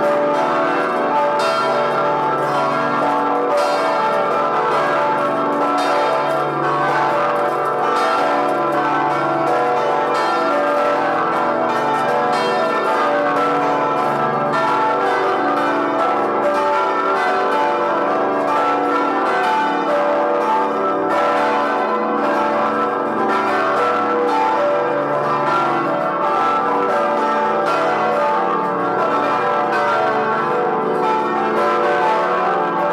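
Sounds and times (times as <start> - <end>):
church bells pealing: 0.0 - 32.9.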